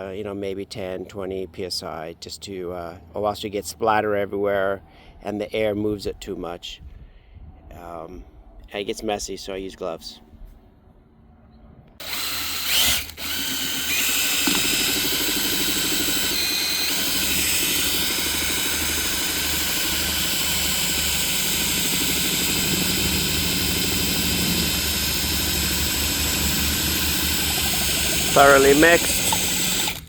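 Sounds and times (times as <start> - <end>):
electric screwdriver spinning paddle: 12.0 - 30.0.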